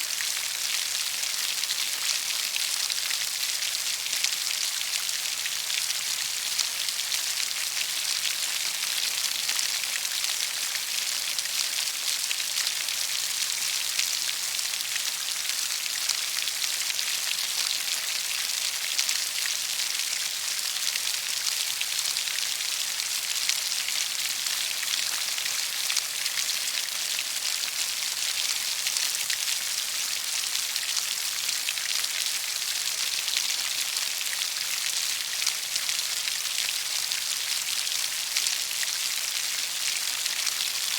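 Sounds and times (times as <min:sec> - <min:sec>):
steady rain pattering: 0:00.0 - 0:40.9.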